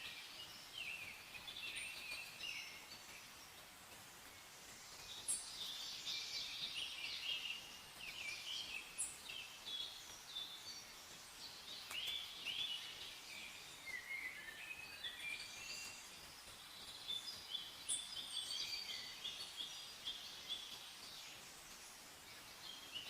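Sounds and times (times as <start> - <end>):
birds chirping and singing: 0.0 - 23.0.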